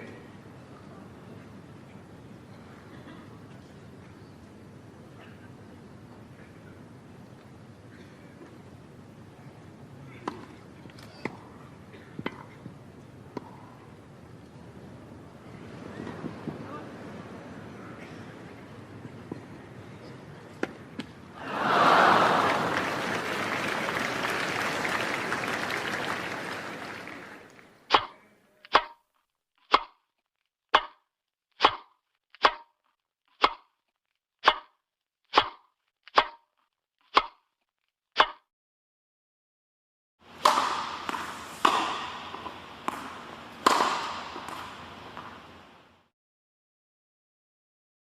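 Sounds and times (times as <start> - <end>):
tennis ball impacts: 10.2 - 11.4, 20.6 - 21.2, 27.9 - 29.0, 29.6 - 30.0, 30.7 - 31.0, 31.6 - 32.7, 33.4 - 33.7, 34.4 - 36.4, 37.1 - 37.4, 40.3 - 45.6.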